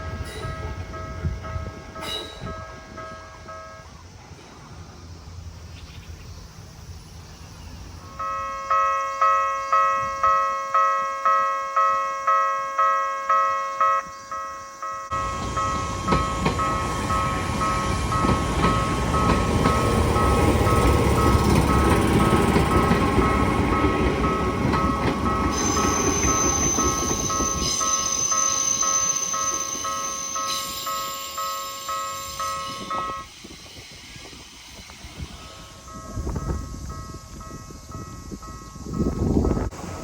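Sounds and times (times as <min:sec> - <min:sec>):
train running: 0:00.0 - 0:40.0
level-crossing alarm ringing: 0:08.1 - 0:33.3.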